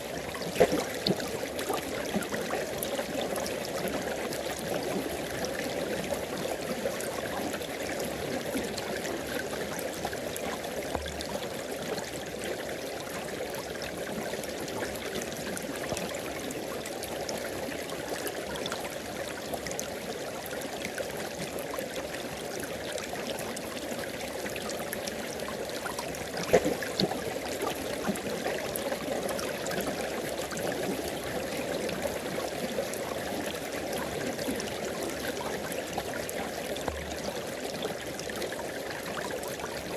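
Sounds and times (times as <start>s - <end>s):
river water over rocks: 0.0s - 39.9s.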